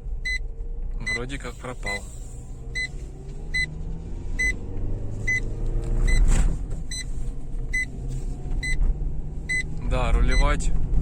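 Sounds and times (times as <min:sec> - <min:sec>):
road and engine rumble: 0:00.0 - 0:11.0
electronic dashboard beep: 0:00.2 - 0:02.0, 0:02.7 - 0:03.8, 0:04.4 - 0:04.6, 0:05.3 - 0:05.5, 0:06.9 - 0:07.1, 0:07.7 - 0:08.0, 0:09.4 - 0:10.6.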